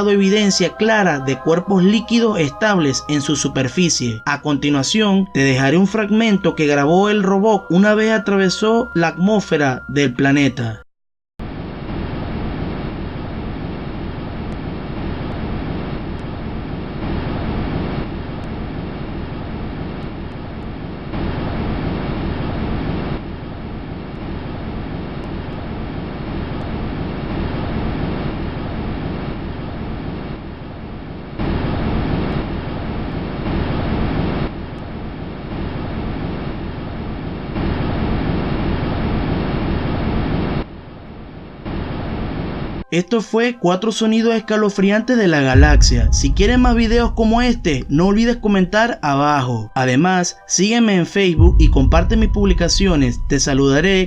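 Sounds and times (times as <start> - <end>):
rushing rumbling noise: 45.6 - 48.8, 51.4 - 54.0.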